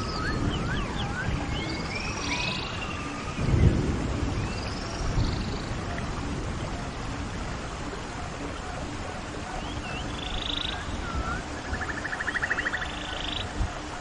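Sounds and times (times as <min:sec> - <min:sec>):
birds chirping and whistling: 0:00.0 - 0:05.8, 0:09.6 - 0:13.5
steady wash of noise: 0:00.0 - 0:14.0.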